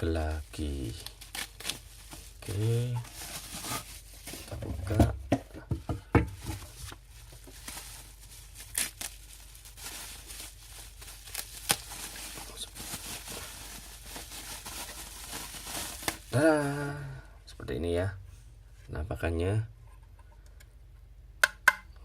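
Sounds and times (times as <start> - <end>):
packaging tearing and crinkling: 0.0 - 4.6, 6.4 - 16.4.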